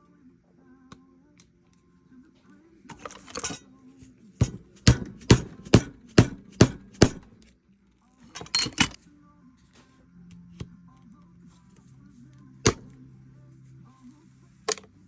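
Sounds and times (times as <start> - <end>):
hammer striking rivet: 4.4 - 7.3, 12.7 - 12.9.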